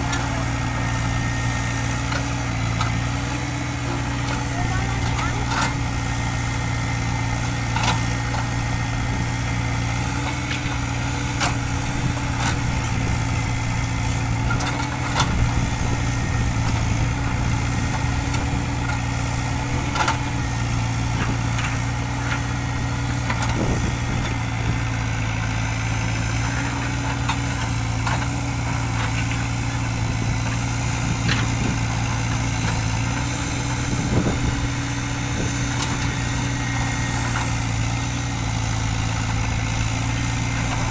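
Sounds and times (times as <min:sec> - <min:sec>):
heavy machinery diesel engine running: 0:00.0 - 0:40.9.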